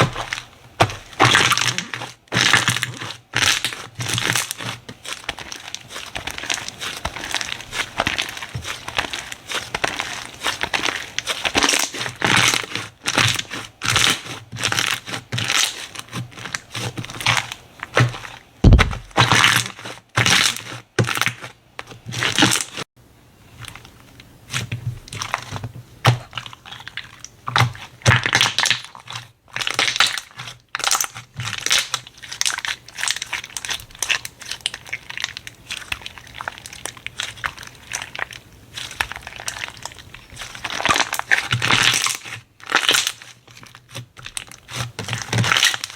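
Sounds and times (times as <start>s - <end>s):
slime crackling squishes: 0.0s - 22.9s, 23.5s - 45.9s
low thump: 18.6s - 19.1s.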